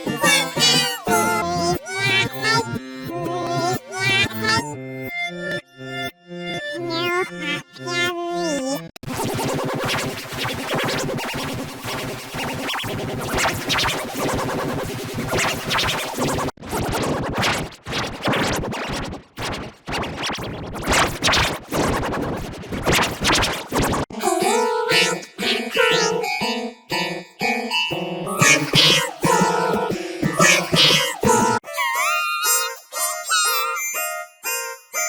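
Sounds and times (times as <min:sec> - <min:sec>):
glitchy stuttering bursts: 0:09.0 - 0:24.0
harsh noisy electronic wash: 0:09.1 - 0:17.4.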